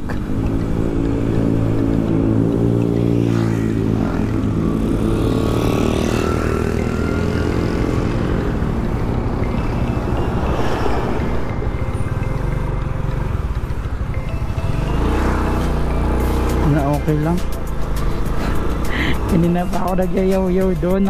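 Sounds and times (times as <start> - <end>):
motorcycle engine running: 11.5 - 21.0.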